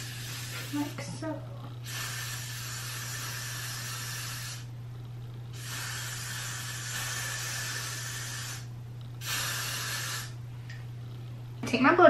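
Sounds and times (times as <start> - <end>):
aerosol spray hissing: 0.0 - 1.2, 1.8 - 4.7, 5.6 - 10.4.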